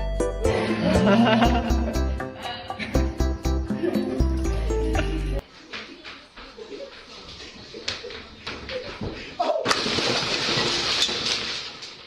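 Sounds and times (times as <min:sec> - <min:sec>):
music with steady beat and bass: 0:00.0 - 0:05.4.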